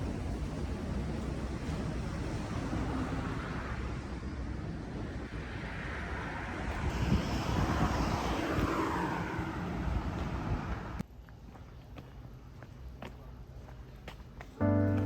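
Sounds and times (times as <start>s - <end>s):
wind on microphone: 4.8s - 11.0s
vehicle traffic rushing: 5.2s - 11.0s, 14.6s - 15.0s.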